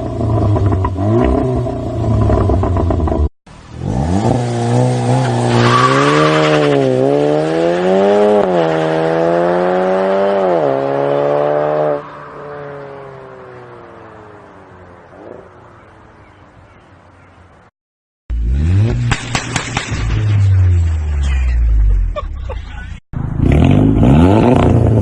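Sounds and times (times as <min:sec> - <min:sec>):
car engine revving hard: 0:03.8 - 0:12.0, 0:18.3 - 0:19.2, 0:23.4 - 0:25.0.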